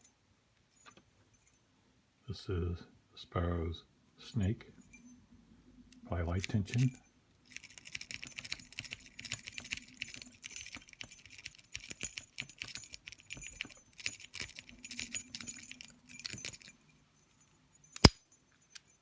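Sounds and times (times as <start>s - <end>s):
lock pick scraping and clicking: 17.9s - 18.9s.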